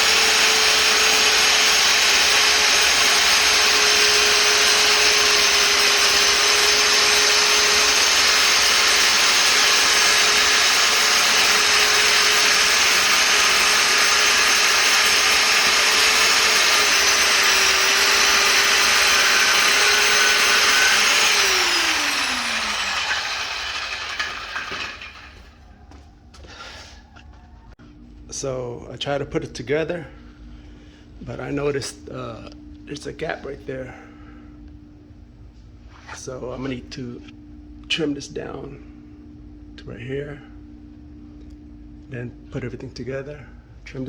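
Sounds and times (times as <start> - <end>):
power tool motor whining: 0.0 - 25.5.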